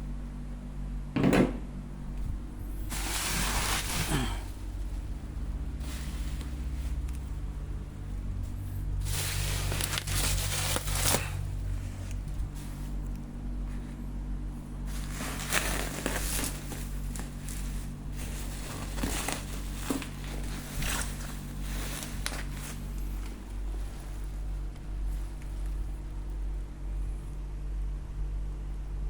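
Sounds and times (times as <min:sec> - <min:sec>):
packaging crinkling and tearing: 0:02.9 - 0:05.1, 0:09.0 - 0:13.2, 0:14.8 - 0:24.3.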